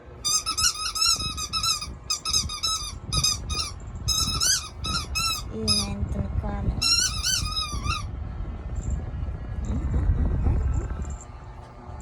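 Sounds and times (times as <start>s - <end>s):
dog whining in high squeals: 0.3s - 5.5s, 6.8s - 8.1s.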